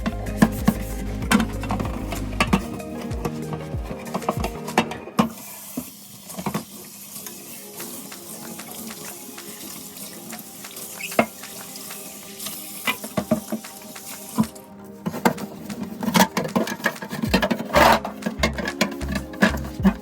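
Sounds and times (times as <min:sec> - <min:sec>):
tap water running into sink: 0:04.1 - 0:20.0.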